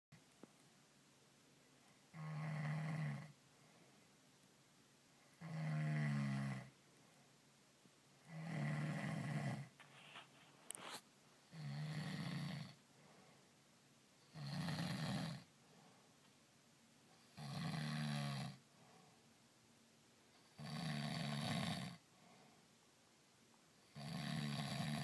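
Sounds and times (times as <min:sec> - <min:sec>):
man snoring: 0:02.1 - 0:03.4, 0:05.4 - 0:06.7, 0:08.2 - 0:09.7, 0:11.5 - 0:12.8, 0:14.3 - 0:15.5, 0:17.3 - 0:18.6, 0:20.5 - 0:22.0, 0:23.9 - 0:25.0.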